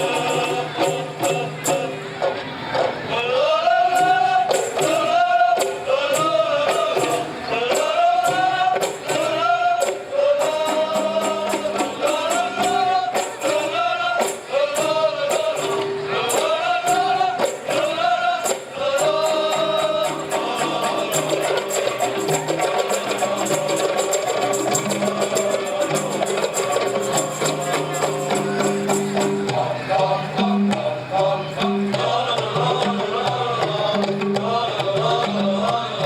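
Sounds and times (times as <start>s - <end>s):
men singing together: 0.0s - 2.3s, 3.0s - 36.0s
frame drums beating: 0.0s - 36.0s
tambourine-like jingle: 4.0s - 29.9s.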